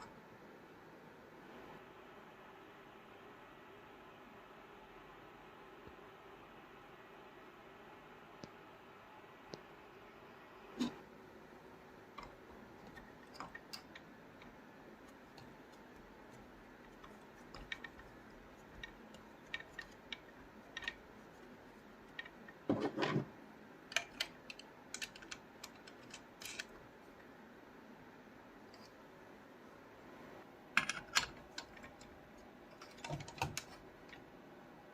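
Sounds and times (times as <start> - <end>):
faint steady hiss: 0.0 - 34.9
light clicks and taps: 12.2 - 22.8.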